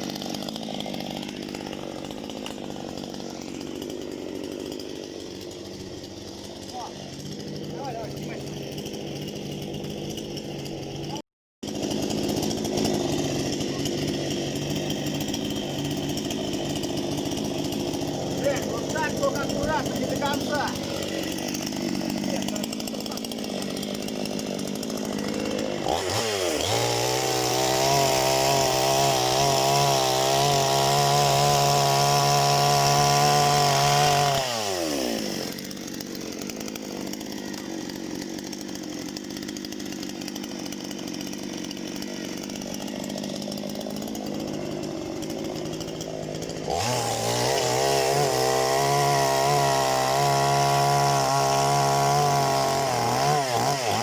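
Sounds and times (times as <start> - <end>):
chainsaw revving: 0.0 - 54.0.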